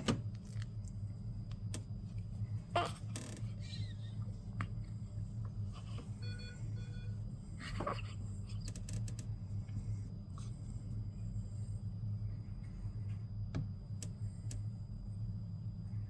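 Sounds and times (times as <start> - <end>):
low room noise hum: 0.0 - 16.0
faint high steady tone: 5.8 - 8.3.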